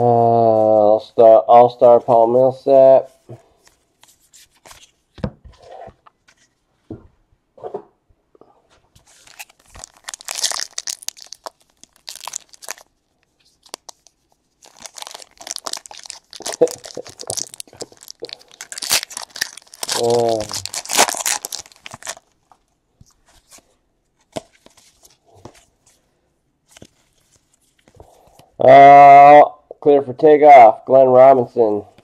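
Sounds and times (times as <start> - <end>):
card pack wrappers tearing and crinkling: 9.1 - 12.9, 13.6 - 22.4.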